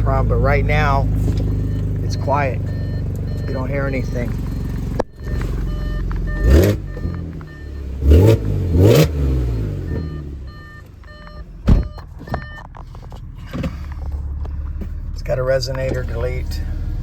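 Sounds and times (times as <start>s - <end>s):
car engine idling and revving: 0.0s - 17.0s
faint short beeps: 1.4s - 8.4s
thump: 11.6s - 12.5s.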